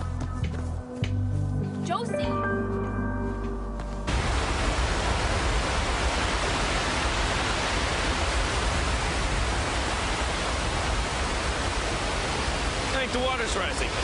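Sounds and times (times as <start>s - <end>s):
river water rushing: 4.1s - 14.0s.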